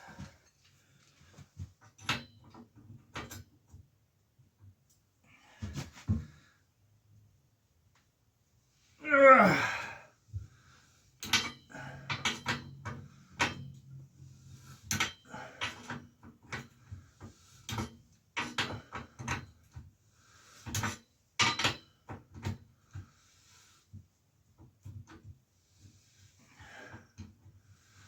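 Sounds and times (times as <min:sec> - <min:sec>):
hand tools clinking on bicycle parts: 0:11.2 - 0:13.8.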